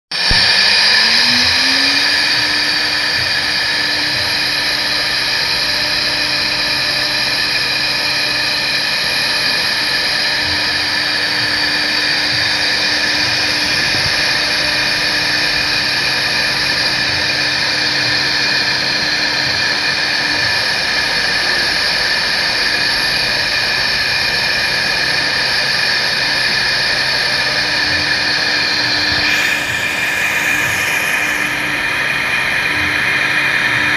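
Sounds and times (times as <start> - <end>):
router spindle whine: 0.1 - 33.9
cutting hiss: 0.2 - 7.2, 28.6 - 32.8.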